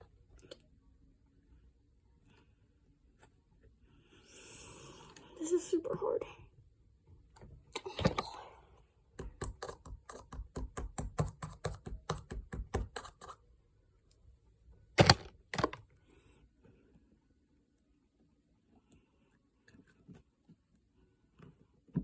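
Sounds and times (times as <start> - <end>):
clicking on plastic container: 15.0 - 15.8.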